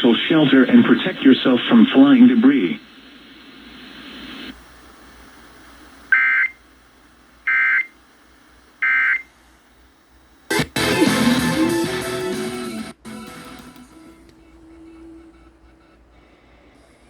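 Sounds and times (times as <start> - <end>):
music over radio: 10.5 - 17.0.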